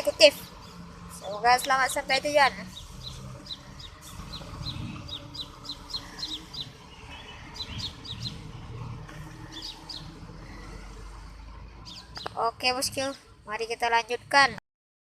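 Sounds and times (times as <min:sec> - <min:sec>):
high bird chirps: 0:02.6 - 0:08.6, 0:09.3 - 0:10.8.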